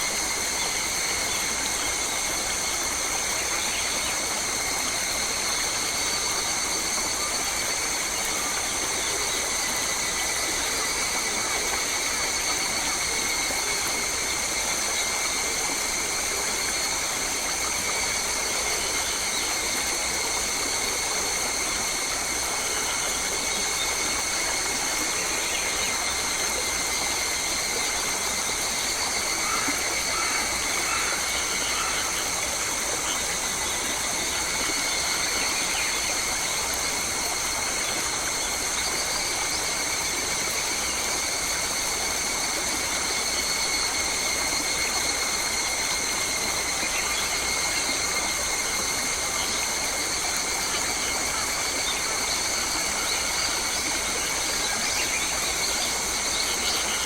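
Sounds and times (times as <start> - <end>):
rush like running water: 0.0 - 57.0.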